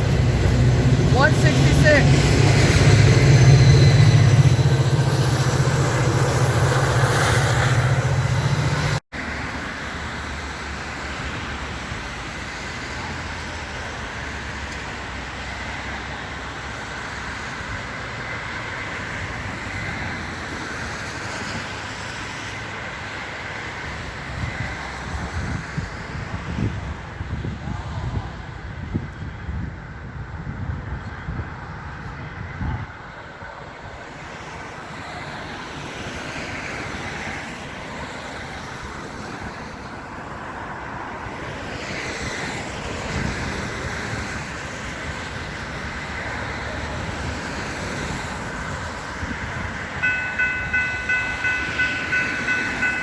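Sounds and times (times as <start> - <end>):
diesel locomotive running: 0.0 - 30.6, 33.0 - 53.0
train rumbling by: 0.0 - 53.0
train wheel clatter: 50.0 - 53.0.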